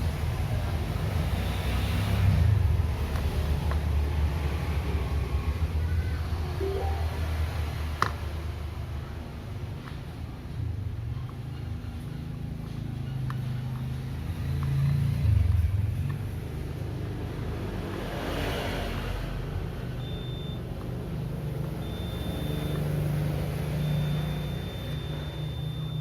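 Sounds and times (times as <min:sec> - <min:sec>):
multimeter continuity buzzer beeping: 0:20.0 - 0:20.6, 0:21.7 - 0:26.0.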